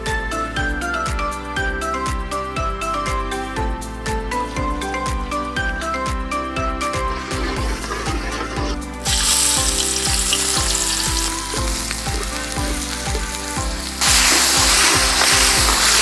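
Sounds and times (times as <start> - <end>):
music with steady beat: 0.0 - 16.0
food frying in hot oil: 9.0 - 16.0.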